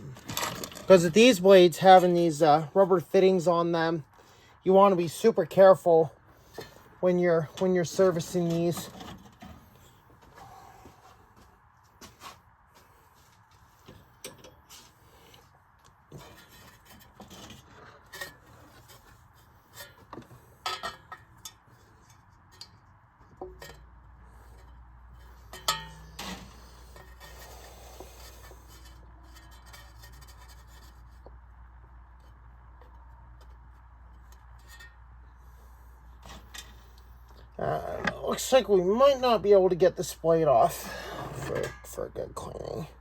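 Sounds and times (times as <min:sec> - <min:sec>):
low steady hum: 0:00.0 - 0:43.0
screwdriver scraping fan hub: 0:16.1 - 0:22.8, 0:23.4 - 0:31.5.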